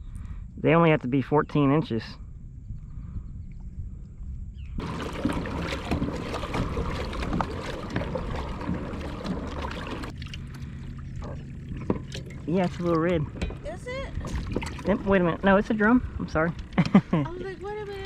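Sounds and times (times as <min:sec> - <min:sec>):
wind rumble on microphone: 0:00.0 - 0:18.0
knocks against a hull: 0:04.8 - 0:10.1, 0:11.2 - 0:15.1
water splashing around a kayak: 0:04.8 - 0:18.0.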